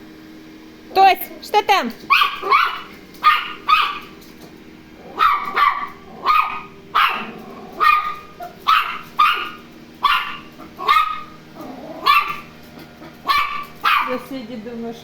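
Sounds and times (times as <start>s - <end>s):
small dog barking: 2.1s - 4.2s, 5.0s - 14.3s.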